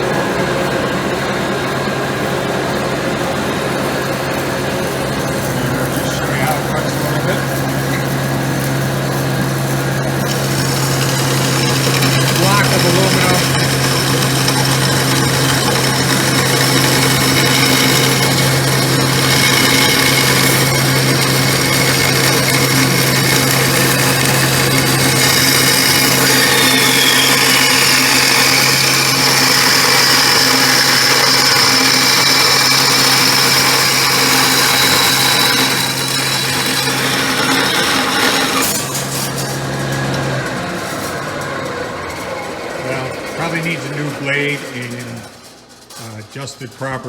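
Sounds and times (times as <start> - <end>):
bandsaw running: 0.0 - 47.0
high whine sliding down: 22.8 - 36.4.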